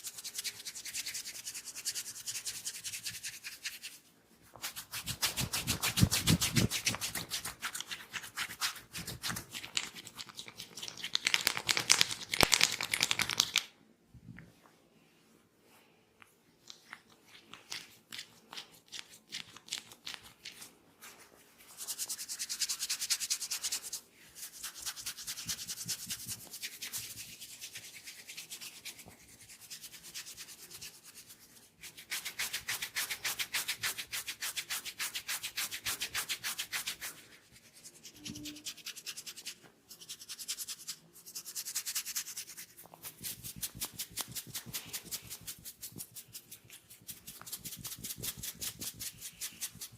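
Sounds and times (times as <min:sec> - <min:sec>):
hands rubbing oiled hair: 0:00.0 - 0:13.7, 0:16.2 - 0:49.9.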